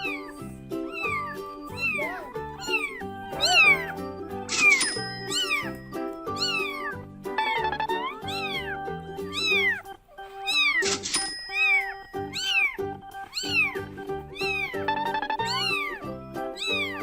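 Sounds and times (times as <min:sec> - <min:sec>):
kitten meowing: 0:00.0 - 0:04.0, 0:04.6 - 0:10.8, 0:11.6 - 0:17.0.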